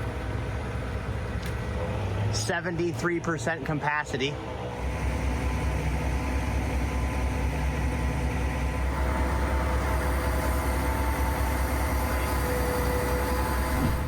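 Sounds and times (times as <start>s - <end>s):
truck engine droning: 0.0s - 14.0s
steady whine: 4.2s - 14.0s.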